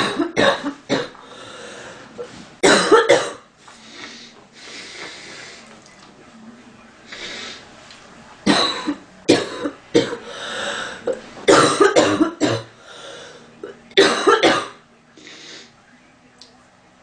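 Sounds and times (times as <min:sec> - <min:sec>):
woman coughing: 0:00.0 - 0:01.2, 0:02.6 - 0:03.4, 0:08.5 - 0:10.2, 0:11.5 - 0:12.7, 0:14.0 - 0:14.8
quiet breaths: 0:01.2 - 0:02.6, 0:03.6 - 0:05.9, 0:07.0 - 0:07.9, 0:10.2 - 0:11.1, 0:12.8 - 0:13.6.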